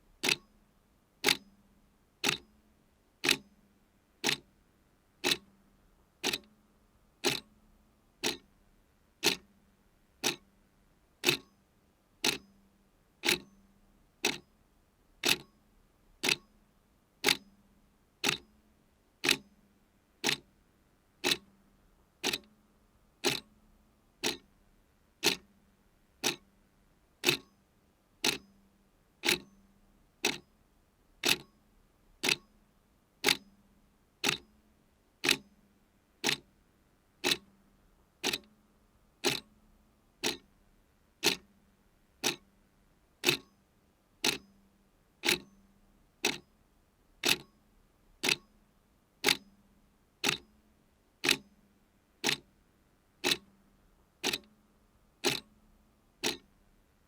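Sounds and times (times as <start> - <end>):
clock ticking: 0.2 - 0.4, 1.2 - 1.4, 2.2 - 2.4, 3.2 - 3.4, 4.2 - 4.4, 5.2 - 5.4, 6.2 - 6.5, 7.2 - 7.5, 8.2 - 8.4, 9.2 - 9.4, 10.2 - 10.4, 11.2 - 11.5, 12.2 - 12.4, 13.2 - 13.5, 14.2 - 14.4, 15.2 - 15.5, 16.2 - 16.4, 18.2 - 18.4, 19.2 - 19.4, 20.2 - 20.4, 21.2 - 21.4, 22.2 - 22.5, 23.2 - 23.5, 24.2 - 24.4, 25.2 - 25.4, 26.2 - 26.4, 27.2 - 27.5, 28.2 - 28.4, 29.2 - 29.5, 30.2 - 30.4, 31.2 - 31.5, 32.2 - 32.5, 33.2 - 33.4, 34.2 - 34.4, 35.2 - 35.4, 36.2 - 36.4, 37.2 - 37.5, 38.2 - 38.5, 39.2 - 39.5, 40.2 - 40.5, 41.2 - 41.5, 42.2 - 42.4, 43.2 - 43.5, 44.2 - 44.4, 45.2 - 45.5, 46.2 - 46.4, 47.2 - 47.5, 48.2 - 48.5, 49.2 - 49.4, 50.2 - 50.4, 51.2 - 51.4, 52.2 - 52.4, 53.2 - 53.5, 54.2 - 54.5, 55.2 - 55.5, 56.2 - 56.5.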